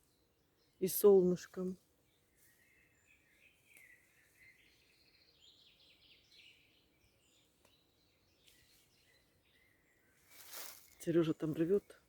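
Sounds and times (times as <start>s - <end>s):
faint songbirds singing: 0.0s - 12.0s.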